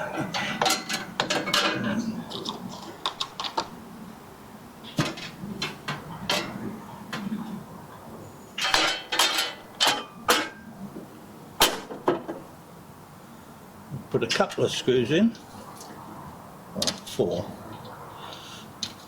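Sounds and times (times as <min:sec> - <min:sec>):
metal cover clanking: 0:00.0 - 0:02.1, 0:04.9 - 0:06.7, 0:08.6 - 0:10.7, 0:11.6 - 0:12.4.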